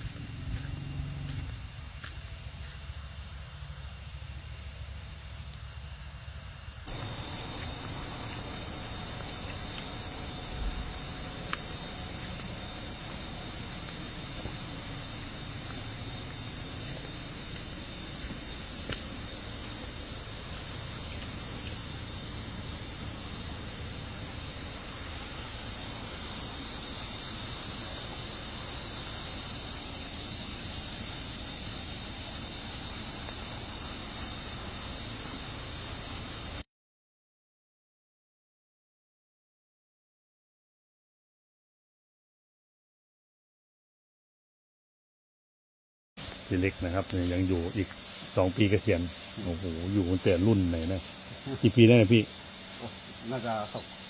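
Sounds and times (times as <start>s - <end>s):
faint low rumble: 0.0s - 29.8s
cicadas chorus: 0.0s - 36.6s, 46.2s - 54.0s.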